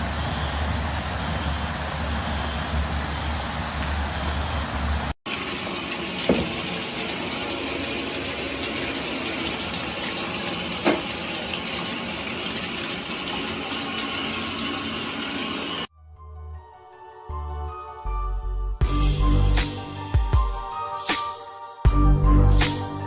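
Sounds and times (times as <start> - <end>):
water gushing: 0.0 - 15.9.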